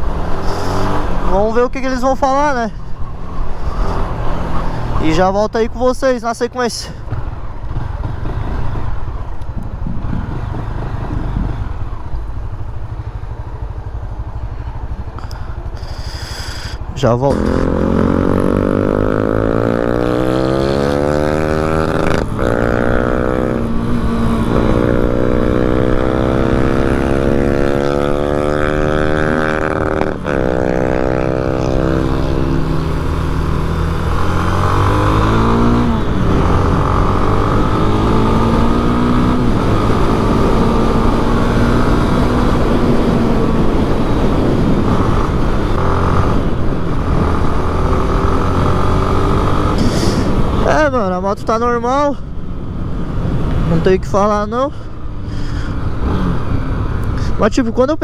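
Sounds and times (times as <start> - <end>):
motorcycle engine revving: 0.0 - 6.2, 6.8 - 57.6
wind rush: 7.1 - 12.3, 17.7 - 50.9.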